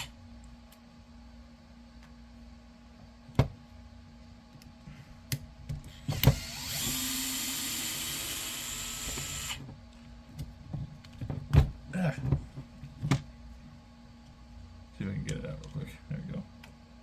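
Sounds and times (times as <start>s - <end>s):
electric screwdriver running: 6.2s - 9.6s.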